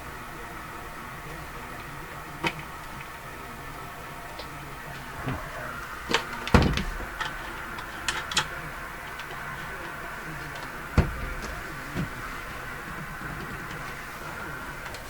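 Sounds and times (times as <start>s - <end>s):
background hiss: 0.0s - 15.0s.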